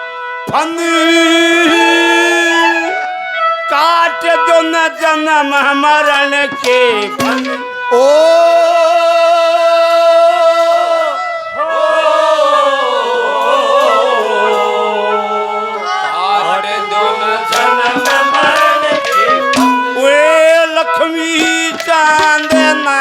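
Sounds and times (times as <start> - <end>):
wavering sung melody: 1.1 - 9.2, 11.8 - 23.0
drum strokes: 6.1 - 8.2, 15.6 - 20.6, 21.3 - 23.0.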